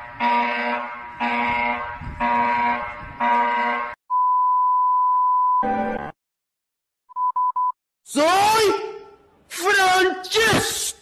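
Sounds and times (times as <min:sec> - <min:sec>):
harsh repeating alarm tone: 0:00.0 - 0:04.0.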